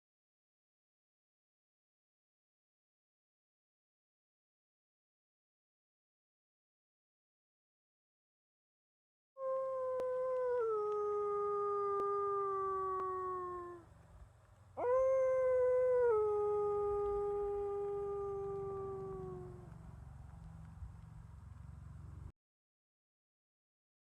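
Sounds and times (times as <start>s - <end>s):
wolf howling: 9.4s - 13.9s, 14.8s - 19.8s.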